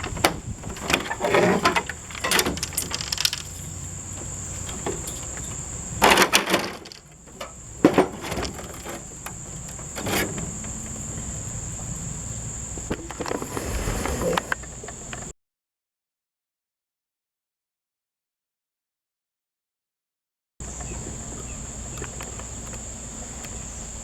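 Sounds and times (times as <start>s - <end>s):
sharp knocks and clatters: 0.0s - 11.2s.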